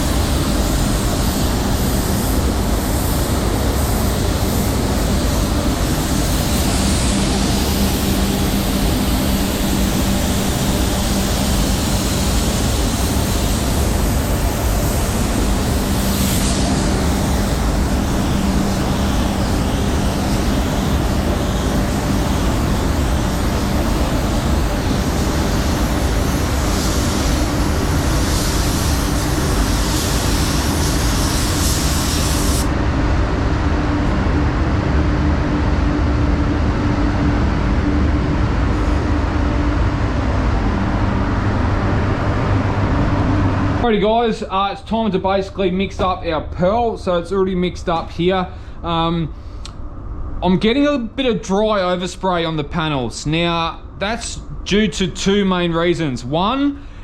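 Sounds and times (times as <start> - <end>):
higher hiss: 0.0 - 32.7
roar of air in spray booth: 0.0 - 44.8, 47.0 - 57.0
low hum: 32.6 - 45.4.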